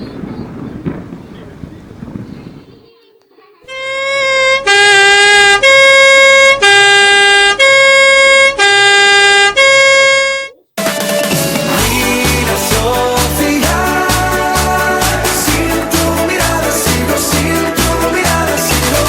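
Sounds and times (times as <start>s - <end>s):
two-tone siren: 3.7s - 10.6s
music: 10.8s - 19.0s.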